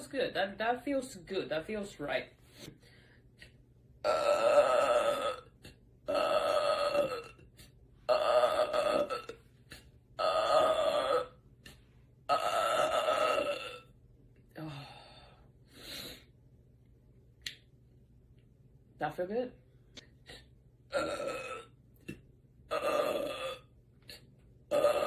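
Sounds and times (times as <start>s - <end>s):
woman belching loudly: 4.0s - 7.5s, 8.1s - 9.4s, 10.2s - 11.4s, 12.3s - 13.9s, 20.9s - 21.8s, 22.7s - 23.7s, 24.7s - 25.0s.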